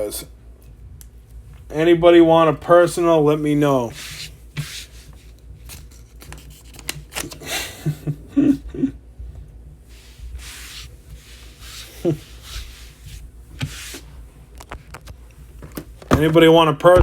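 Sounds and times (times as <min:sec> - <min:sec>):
cards and packaging rustling: 0:04.7 - 0:07.5.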